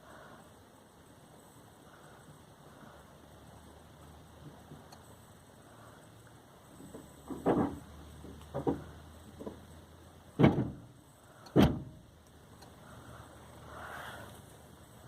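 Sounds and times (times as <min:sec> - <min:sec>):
knocks on a car: 0:10.4 - 0:10.8.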